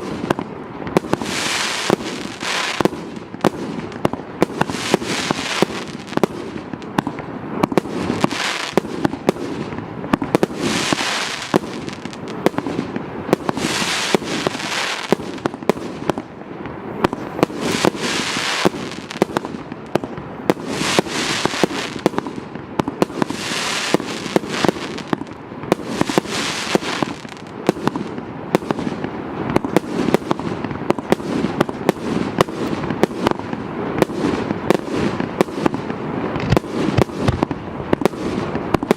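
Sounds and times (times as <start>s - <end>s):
firework hissing: 1.0s - 6.9s, 7.5s - 16.1s, 17.0s - 19.6s, 20.5s - 30.6s.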